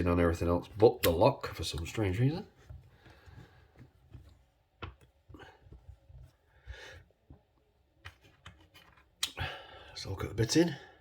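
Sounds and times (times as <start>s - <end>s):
soft breaths: 2.5s - 4.5s, 5.2s - 7.4s.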